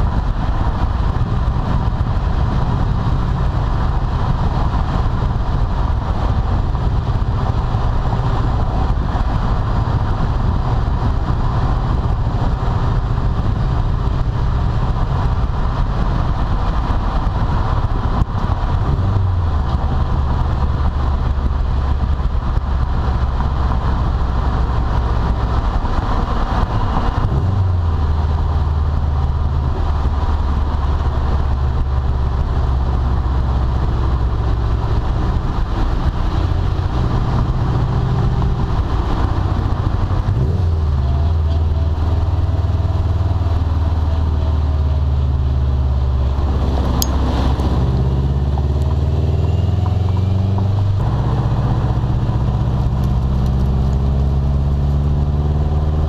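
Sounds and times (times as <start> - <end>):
car engine droning: 0.0 - 56.0.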